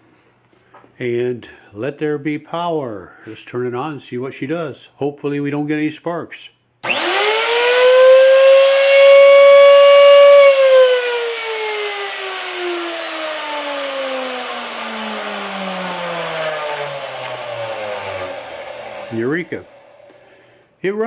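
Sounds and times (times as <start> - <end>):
router motor whine: 6.8 - 20.2.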